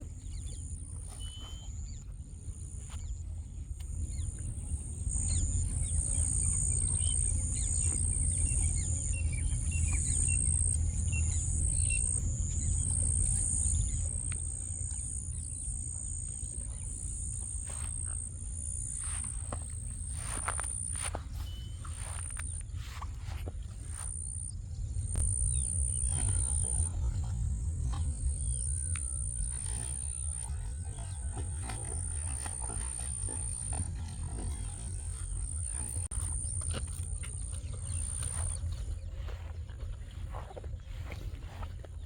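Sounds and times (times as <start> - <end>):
bird chirps: 0.0 - 3.2, 19.0 - 41.7
insect drone: 0.0 - 42.0
low rumble: 0.0 - 42.0.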